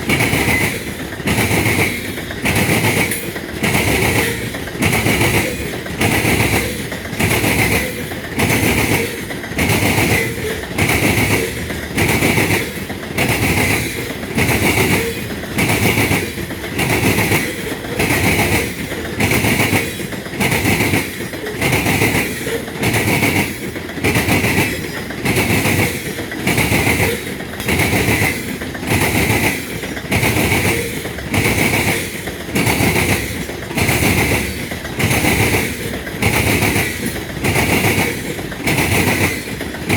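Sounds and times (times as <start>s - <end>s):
freight train wheels clacking: 0.0s - 39.9s.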